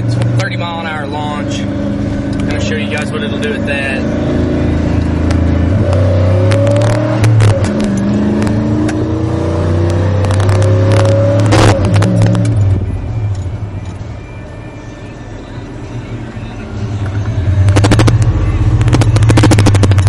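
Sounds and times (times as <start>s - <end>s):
pickup engine accelerating: 0.0s - 14.0s, 16.2s - 20.0s
sharp clicks and rattles: 5.0s - 9.0s, 9.8s - 14.0s, 17.0s - 20.0s.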